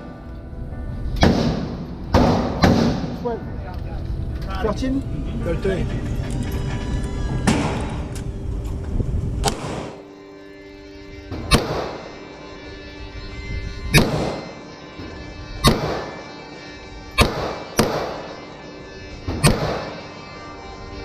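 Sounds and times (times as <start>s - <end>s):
gunshots with echoing tail: 1.2s - 3.2s, 9.4s - 10.0s, 11.5s - 12.1s, 14.0s - 14.5s, 15.6s - 16.1s, 17.2s - 18.3s, 19.3s - 20.0s.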